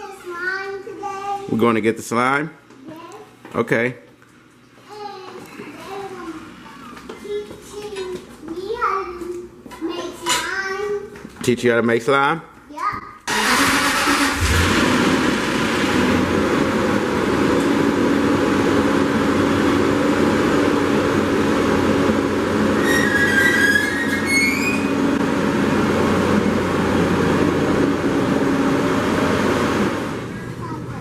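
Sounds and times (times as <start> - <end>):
car road noise: 13.3 - 30.6.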